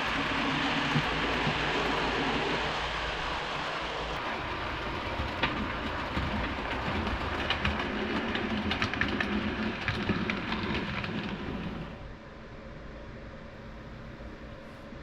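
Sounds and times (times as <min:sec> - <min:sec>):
model train wheels rumbling: 0:00.0 - 0:12.0
clicks over rail joints: 0:05.2 - 0:11.9.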